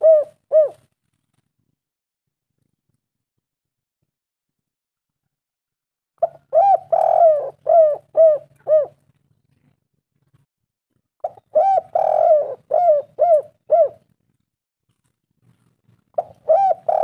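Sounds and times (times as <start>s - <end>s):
dove cooing: 0.0s - 0.8s, 6.2s - 9.0s, 11.2s - 14.1s, 16.2s - 17.0s.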